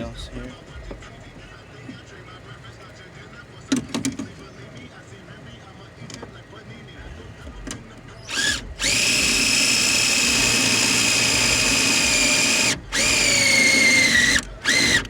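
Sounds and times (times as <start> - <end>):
power drill whining: 8.2 - 15.0.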